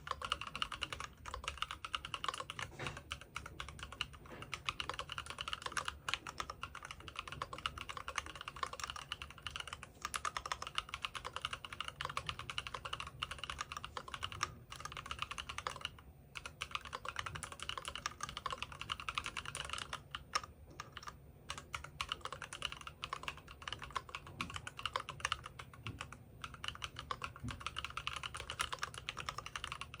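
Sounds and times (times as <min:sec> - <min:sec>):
mechanical keyboard typing: 0:00.0 - 0:30.0.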